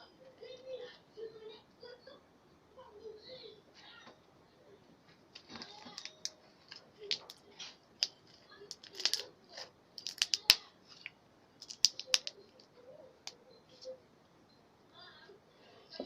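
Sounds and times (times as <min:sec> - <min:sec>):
small objects clicking and snapping: 0:05.4 - 0:13.4.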